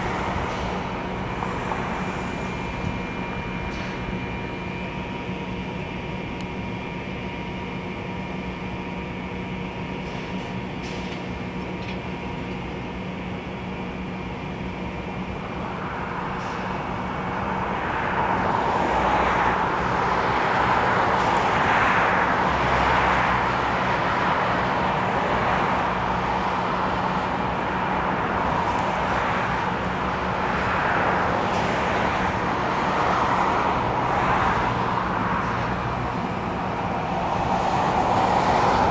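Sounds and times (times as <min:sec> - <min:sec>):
pulsing rushing noise: 0:00.0 - 0:06.8
diesel locomotive running: 0:00.0 - 0:38.9.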